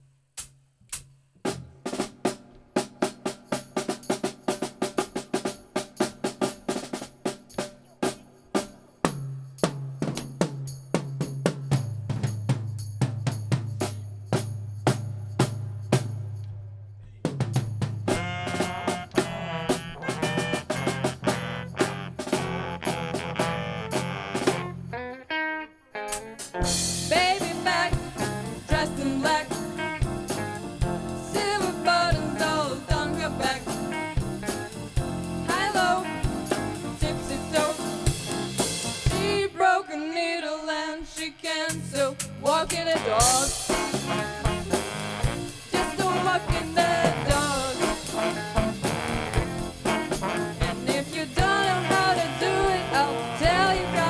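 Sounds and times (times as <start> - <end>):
drum kit groove: 0.0 - 25.0, 26.1 - 39.6, 41.2 - 54.0
bass line: 18.1 - 24.9, 26.6 - 39.5, 41.8 - 54.0
live band playing: 18.1 - 39.5, 41.7 - 54.0.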